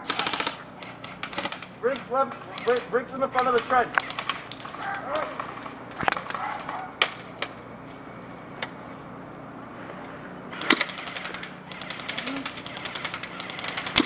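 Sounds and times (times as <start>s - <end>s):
airsoft guns firing: 0.0s - 7.6s, 10.5s - 14.0s.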